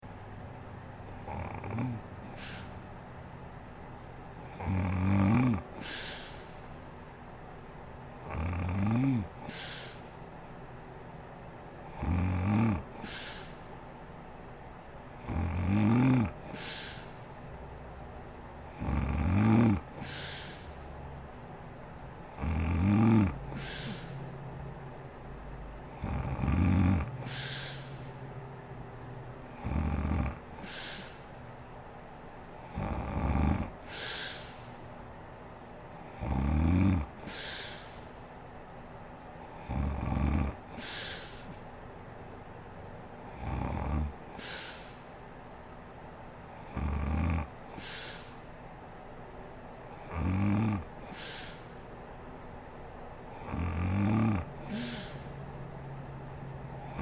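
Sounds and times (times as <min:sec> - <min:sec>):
woman snoring: 0:01.2 - 0:02.7, 0:04.4 - 0:06.5, 0:08.2 - 0:10.0, 0:11.9 - 0:13.6, 0:15.2 - 0:17.2, 0:18.7 - 0:20.7, 0:22.3 - 0:24.2, 0:25.9 - 0:28.1, 0:29.6 - 0:31.3, 0:32.7 - 0:34.6, 0:36.1 - 0:38.1, 0:39.6 - 0:41.5, 0:43.3 - 0:44.9, 0:46.6 - 0:48.4, 0:50.0 - 0:51.7, 0:53.3 - 0:55.4, 0:56.8 - 0:57.0
breathy hissing exhale: 0:01.2 - 0:02.9, 0:05.3 - 0:06.9, 0:08.9 - 0:10.3, 0:12.0 - 0:13.8, 0:15.3 - 0:17.4, 0:18.8 - 0:21.0, 0:22.4 - 0:24.4, 0:25.9 - 0:28.3, 0:29.5 - 0:31.5, 0:32.7 - 0:34.9, 0:36.2 - 0:38.3, 0:39.5 - 0:41.7, 0:43.3 - 0:45.2, 0:47.6 - 0:48.6, 0:49.9 - 0:52.0, 0:53.3 - 0:55.7, 0:56.7 - 0:57.0.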